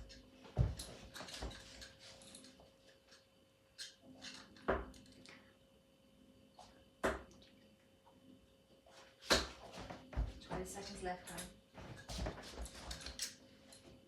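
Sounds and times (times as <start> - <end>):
darts thudding into dartboard: 7.0 - 7.3, 9.2 - 9.7.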